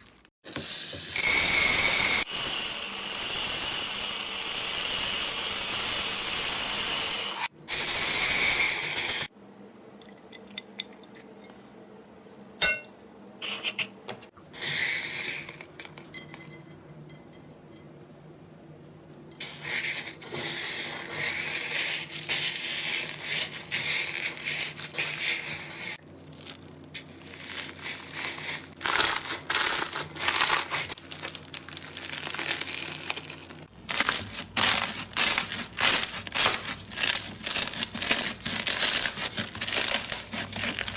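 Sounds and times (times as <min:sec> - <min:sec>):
slime squishing and crackling: 0:28.8 - 0:40.9.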